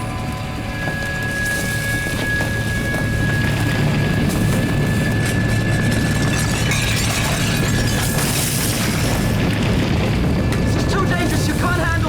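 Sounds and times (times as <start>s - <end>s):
thin high whine: 0.0s - 6.1s
low rumbling drone: 0.0s - 10.8s.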